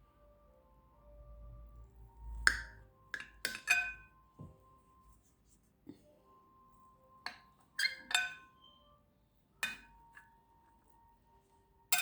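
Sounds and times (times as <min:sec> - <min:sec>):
knife clinking on plate: 0:03.2 - 0:04.1, 0:07.3 - 0:08.5, 0:09.6 - 0:10.2.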